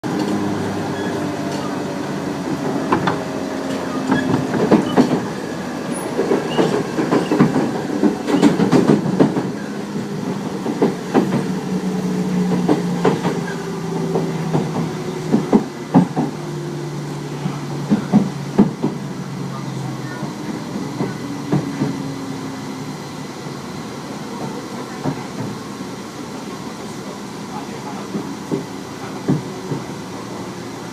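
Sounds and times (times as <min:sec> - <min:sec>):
wheels clacking over rail joints: 0:00.1 - 0:01.9, 0:02.5 - 0:11.7, 0:12.3 - 0:16.5.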